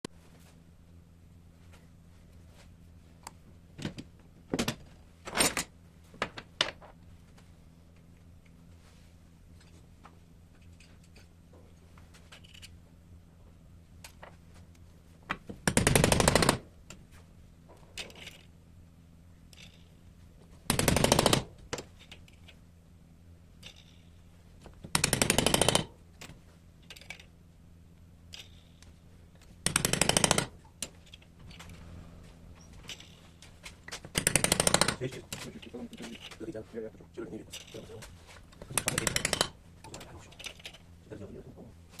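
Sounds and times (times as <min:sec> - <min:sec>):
hammering power tool: 0:34.2 - 0:35.0.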